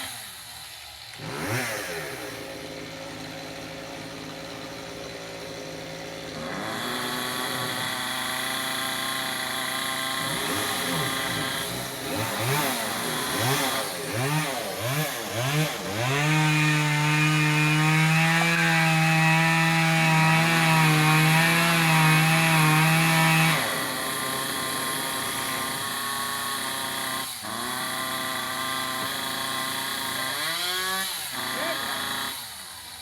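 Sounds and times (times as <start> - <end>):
chainsaw revving: 0.0 - 33.0.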